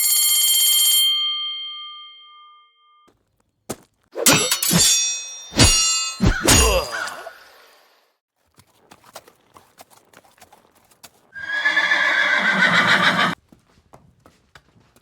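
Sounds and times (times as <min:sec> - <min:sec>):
loud animal call: 0:11.4 - 0:13.4.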